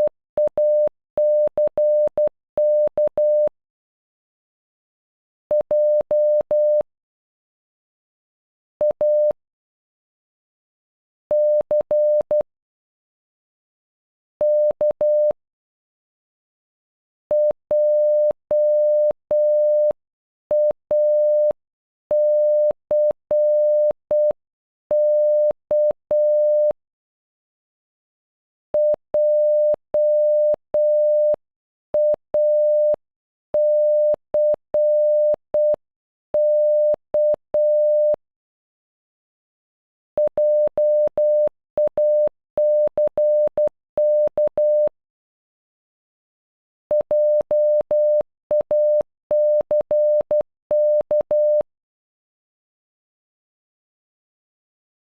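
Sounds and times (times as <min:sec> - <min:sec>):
morse code beeps: 0:00.0 - 0:03.5, 0:17.3 - 0:20.0, 0:22.2 - 0:24.4, 0:28.8 - 0:31.4, 0:32.0 - 0:33.0, 0:33.6 - 0:35.8, 0:36.4 - 0:38.2, 0:40.2 - 0:44.9, 0:46.9 - 0:51.7.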